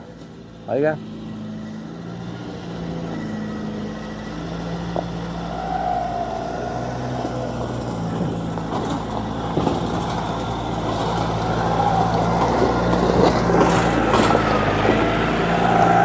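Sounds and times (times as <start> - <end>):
truck engine pulling uphill: 0.0 - 16.0.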